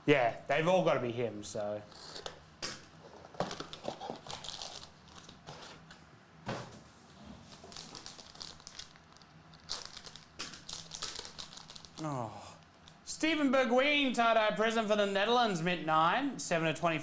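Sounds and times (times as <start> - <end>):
plastic packaging crinkling and tearing: 1.9 - 6.0, 7.4 - 13.0
small clicks and rustles: 1.9 - 6.1, 6.8 - 12.0.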